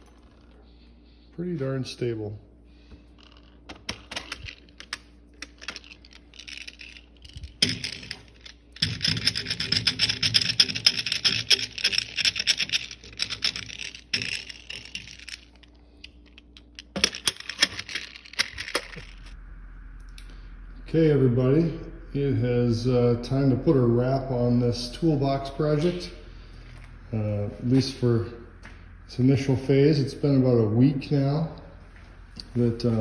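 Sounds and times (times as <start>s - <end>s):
metal tools clinking in drawer: 4.2s - 15.4s.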